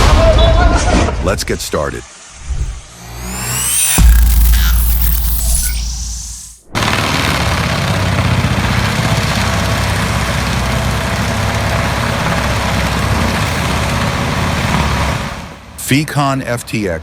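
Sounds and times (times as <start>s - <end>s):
mechanical working noise: 2.4s - 14.8s
heavy diesel engine rumble: 6.8s - 15.7s.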